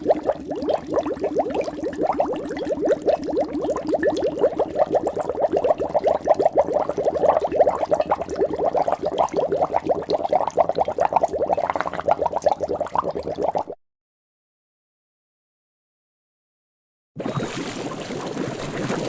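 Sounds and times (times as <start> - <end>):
water bubbling: 0.0 - 13.8, 17.2 - 19.0.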